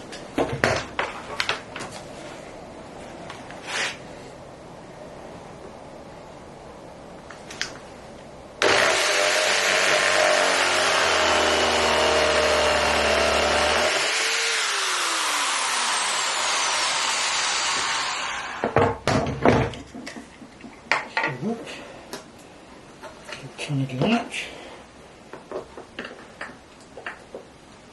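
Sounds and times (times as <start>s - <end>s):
sharp knocks and clatters: 0.2s - 1.9s, 18.6s - 21.4s
electric drill motor whining: 8.6s - 18.7s.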